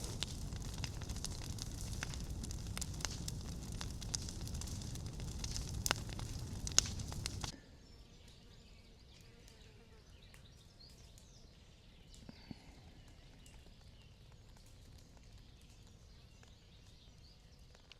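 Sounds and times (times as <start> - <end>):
bonfire crackling and popping: 0.0 - 7.6, 13.0 - 17.9.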